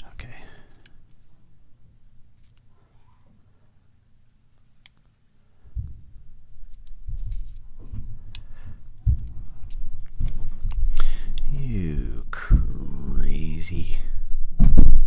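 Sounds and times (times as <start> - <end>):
tools clicking on metal: 0.5 - 1.4, 2.4 - 2.7.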